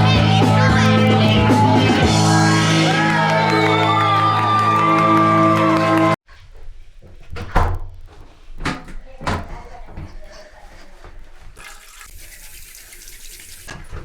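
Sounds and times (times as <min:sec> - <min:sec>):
crowd shouting: 0:00.0 - 0:06.2.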